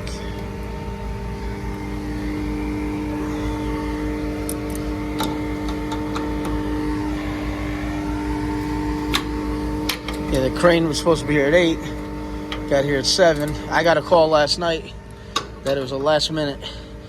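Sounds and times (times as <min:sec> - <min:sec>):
machine motor and compressor hum: 0:00.0 - 0:17.0.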